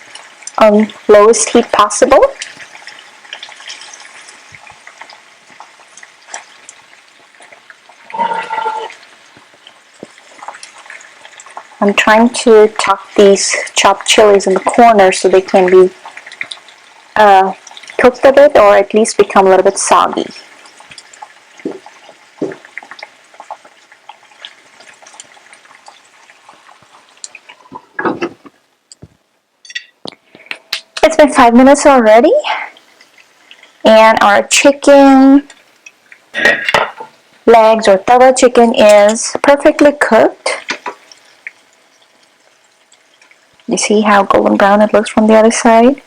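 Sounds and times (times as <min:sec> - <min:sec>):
gravy sizzling in a pan: 0:00.0 - 0:46.0
pitched squeak: 0:08.1 - 0:09.0.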